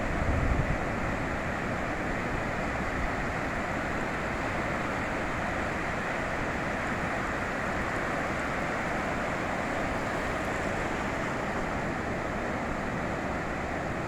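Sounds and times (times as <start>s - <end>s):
ocean waves on beach: 7.0s - 14.0s.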